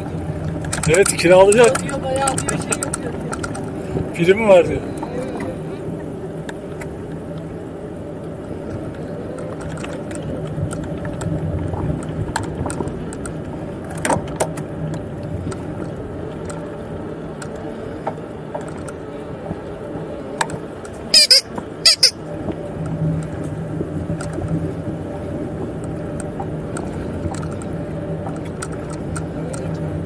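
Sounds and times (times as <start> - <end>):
rolling and wind noise: 0.0 - 30.0
bicycle chain clicking and rattling: 0.5 - 3.8
loud high-pitched sounds: 21.2 - 22.2.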